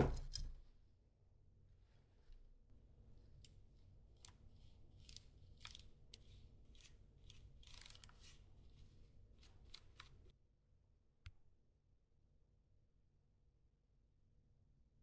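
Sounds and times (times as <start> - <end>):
scratchy handling sounds: 3.0 - 10.3.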